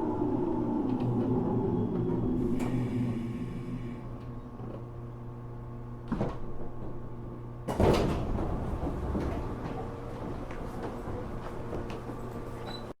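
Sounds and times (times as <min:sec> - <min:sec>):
electric train hum: 0:00.0 - 0:12.9
passenger doors sliding clatter: 0:07.7 - 0:12.9.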